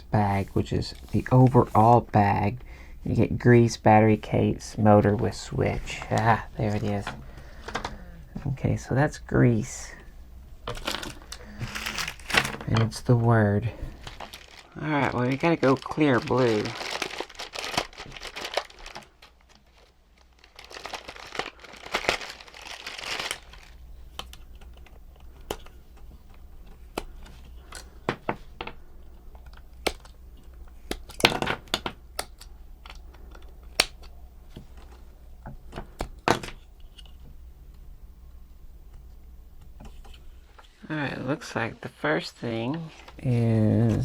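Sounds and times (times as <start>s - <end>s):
plastic bags crinkling and tearing: 10.6s - 25.8s
small plastic parts clicking: 28.6s - 35.0s.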